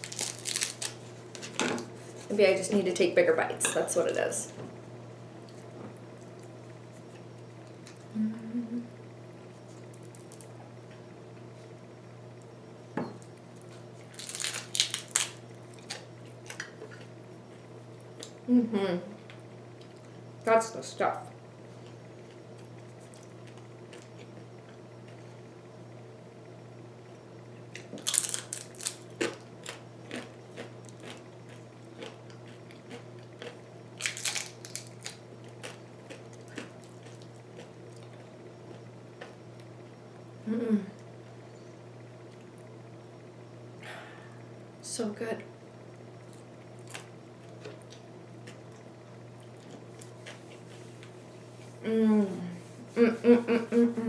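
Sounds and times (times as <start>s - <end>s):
crisp food crunching: 0.0s - 1.5s, 9.7s - 10.6s, 13.6s - 17.1s, 27.7s - 39.7s, 46.2s - 50.8s
steady low hum: 0.0s - 54.0s.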